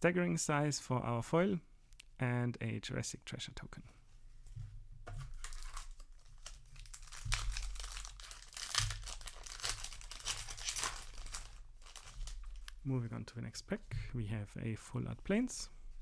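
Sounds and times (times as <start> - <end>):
plastic wrapper crinkling and ripping: 5.2 - 12.8.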